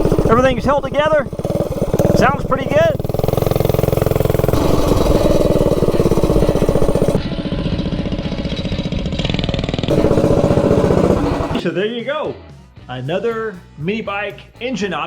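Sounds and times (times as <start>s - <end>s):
minibike engine running hard: 0.0s - 11.6s.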